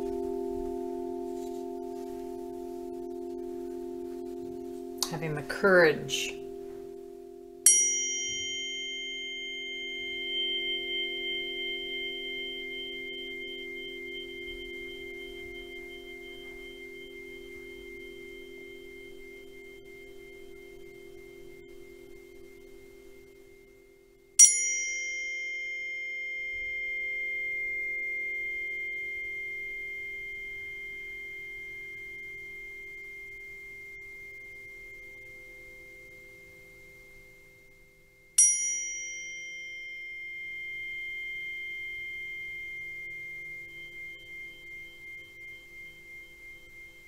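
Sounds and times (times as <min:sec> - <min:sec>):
bell-like metal tone ringing: 0:00.0 - 0:47.0
low steady hum: 0:00.0 - 0:47.0.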